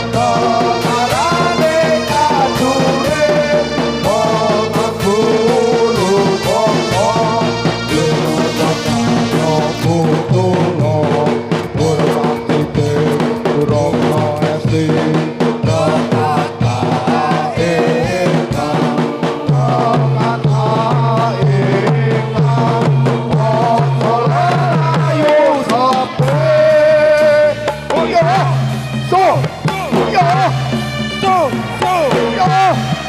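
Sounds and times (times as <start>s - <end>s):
drums beating steady rhythm: 0.0s - 33.0s.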